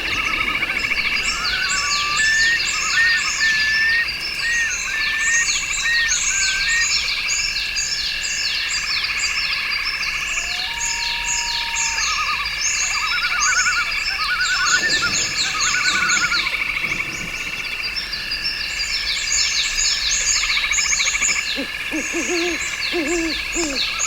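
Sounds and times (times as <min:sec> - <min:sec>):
bird whistles: 0:00.0 - 0:07.0, 0:11.6 - 0:16.6
frogs and insects trilling: 0:00.0 - 0:24.0.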